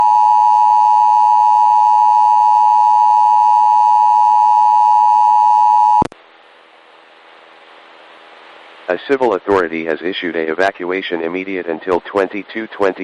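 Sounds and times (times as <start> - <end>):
faint hiss: 6.2 - 13.0.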